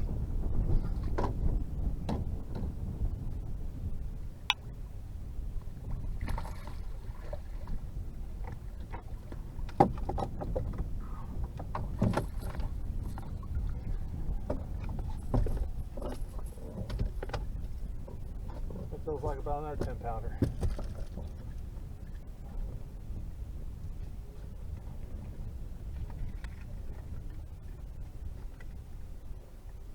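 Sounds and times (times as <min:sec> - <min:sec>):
wind and water rumble: 0:00.0 - 0:29.9
gear knocking in a boat: 0:07.6 - 0:21.9.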